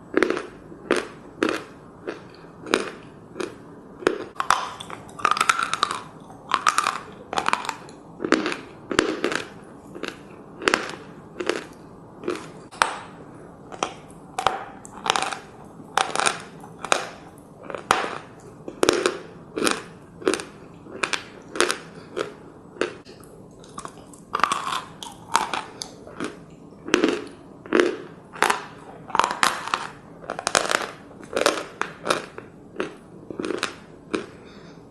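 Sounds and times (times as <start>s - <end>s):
chalk crunching being chewed: 0.2s - 12.8s, 13.7s - 34.5s.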